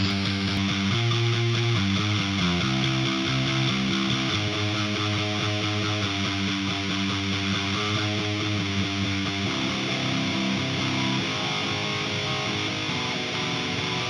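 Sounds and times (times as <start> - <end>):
distorted electric guitar riff: 0.0 - 14.0.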